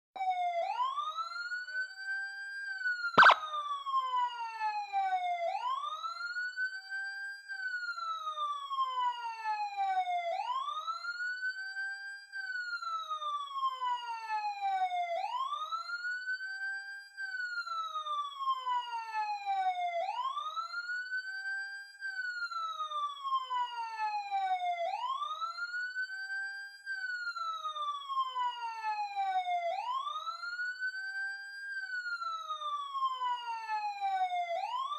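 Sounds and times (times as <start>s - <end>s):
police siren wailing: 0.2s - 34.9s.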